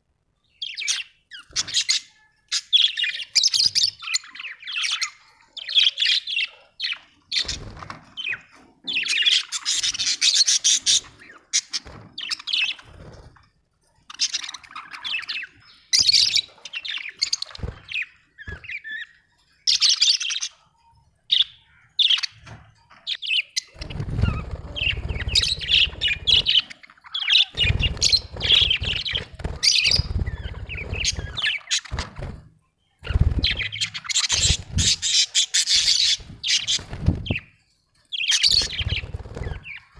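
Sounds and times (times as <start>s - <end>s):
budgerigars chirping: 0.6s - 12.9s, 23.1s - 32.1s, 33.1s - 37.5s, 38.1s - 39.9s.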